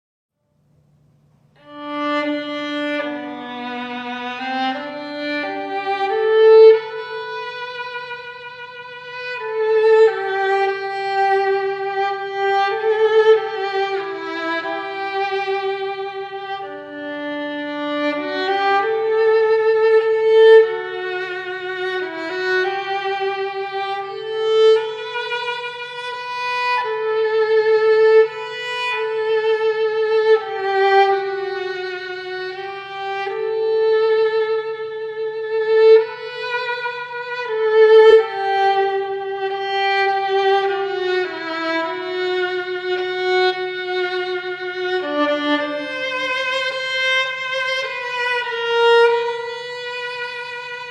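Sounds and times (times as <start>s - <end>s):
slow violin melody: 1.5s - 50.9s.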